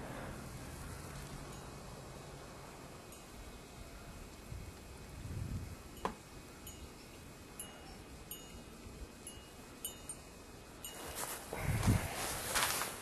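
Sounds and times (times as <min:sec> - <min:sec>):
wind chimes ringing: 0:01.4 - 0:01.9, 0:03.1 - 0:03.5, 0:06.0 - 0:11.4.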